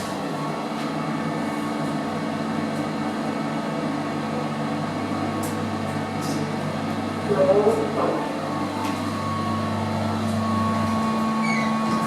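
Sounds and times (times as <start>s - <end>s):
lift drive humming: 4.8s - 12.0s.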